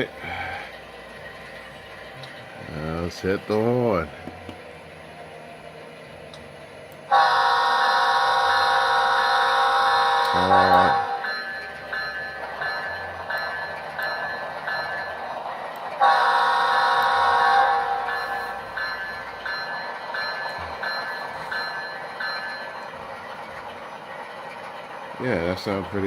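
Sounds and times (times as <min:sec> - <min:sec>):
multi-note air horn blast: 0:07.1 - 0:11.0
locomotive bell ringing: 0:07.1 - 0:26.0.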